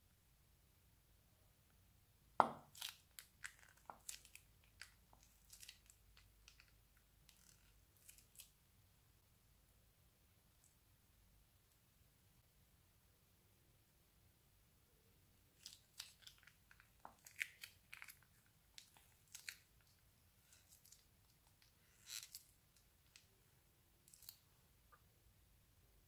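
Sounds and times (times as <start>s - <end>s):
crunchy slime crackling: 2.6s - 8.6s, 15.5s - 23.3s.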